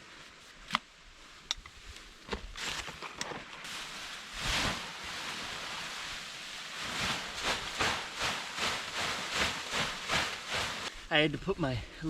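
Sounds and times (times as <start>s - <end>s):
rustling: 2.1s - 11.0s
crunching footsteps in snow: 2.4s - 11.0s.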